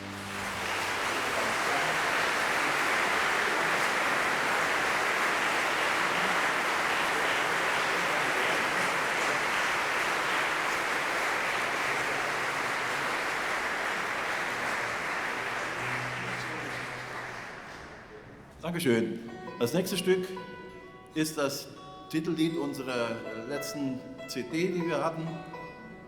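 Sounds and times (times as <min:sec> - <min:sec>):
audience applauding: 0:00.0 - 0:18.5.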